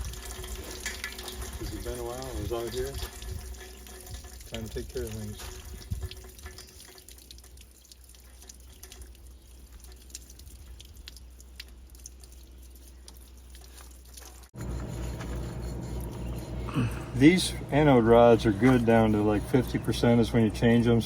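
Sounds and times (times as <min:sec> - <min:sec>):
water dripping and trickling: 0:00.0 - 0:14.6, 0:17.3 - 0:21.0
low hum: 0:14.6 - 0:21.0.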